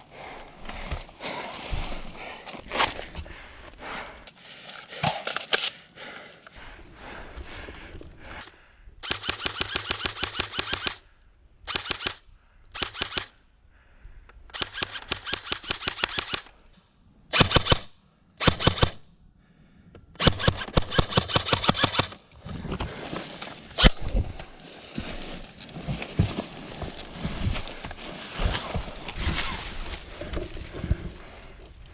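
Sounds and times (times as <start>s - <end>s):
airsoft gun full-auto bursts: 9.0s - 11.0s, 12.8s - 13.3s, 14.5s - 16.5s, 17.3s - 19.0s, 20.2s - 22.2s
rustling movement: 22.4s - 31.8s.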